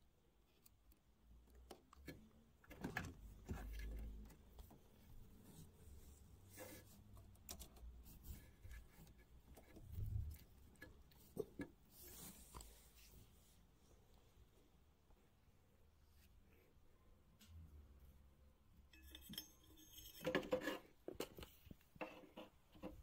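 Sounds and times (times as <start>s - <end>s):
handling clicks and rubbing: 0.5s - 13.1s.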